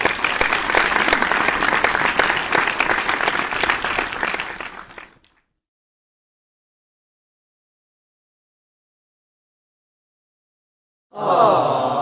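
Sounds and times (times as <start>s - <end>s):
crowd applauding: 0.0s - 5.4s.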